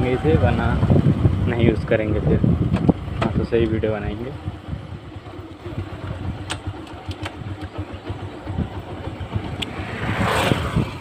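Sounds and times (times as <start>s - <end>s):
motorcycle engine rumble: 0.0s - 11.0s
sharp clicks: 6.4s - 7.8s
rush of noise: 9.4s - 11.0s.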